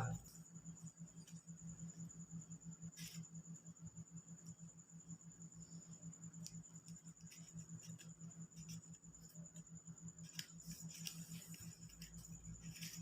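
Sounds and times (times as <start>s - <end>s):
low electrical hum: 0.0s - 13.0s
paper clicks and rustles: 10.2s - 13.0s.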